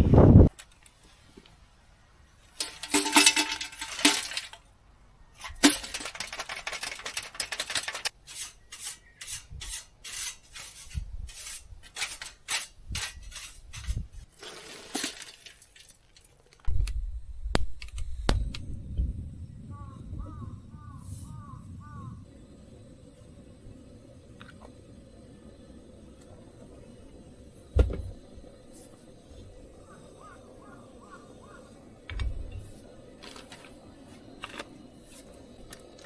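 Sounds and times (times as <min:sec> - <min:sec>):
kitchenware clinking: 0:02.6 - 0:04.6
rustling clatter: 0:02.6 - 0:04.6, 0:05.4 - 0:08.1, 0:32.1 - 0:36.0.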